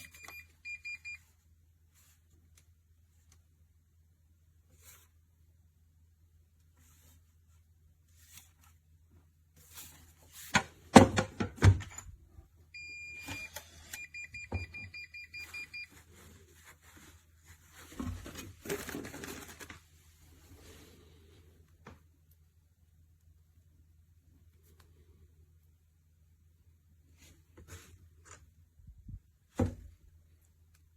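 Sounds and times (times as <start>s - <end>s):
safe electronic beeps: 0.0s - 1.2s, 12.8s - 15.9s.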